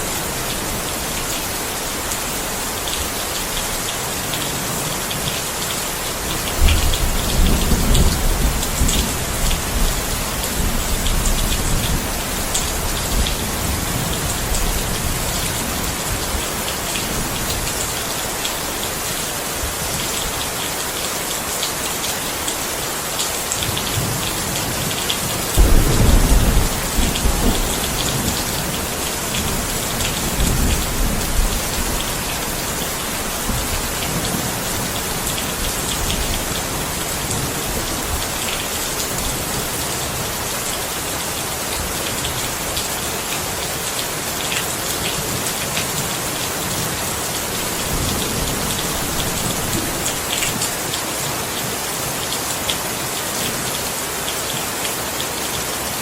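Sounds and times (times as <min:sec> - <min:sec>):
steady rain falling: 0:00.0 - 0:56.0
thunder rumbling: 0:25.6 - 0:38.2.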